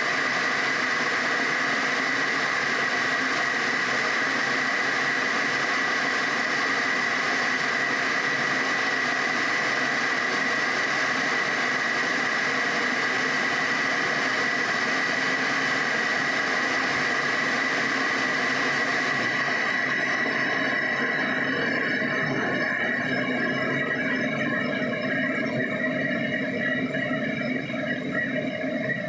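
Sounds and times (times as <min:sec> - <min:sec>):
electric kettle heating water: 0:00.0 - 0:22.5.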